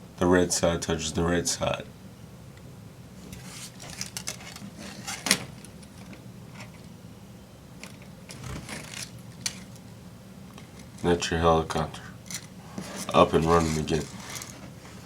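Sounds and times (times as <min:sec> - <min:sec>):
low steady hum: 0:00.0 - 0:15.0
clicks of hands handling plastic: 0:03.2 - 0:07.0, 0:07.8 - 0:09.9, 0:12.2 - 0:15.0.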